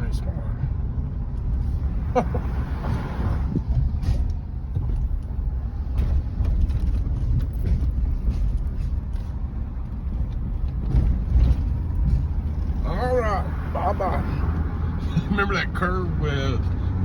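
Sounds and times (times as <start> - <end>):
road and engine rumble: 0.0 - 17.0
interior knocks and creaks: 3.4 - 12.8.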